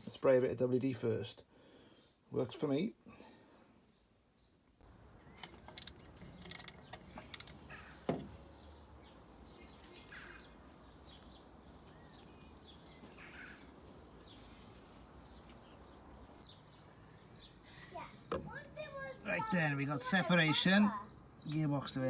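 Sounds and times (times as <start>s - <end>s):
faint bird chirps: 3.8s - 19.5s.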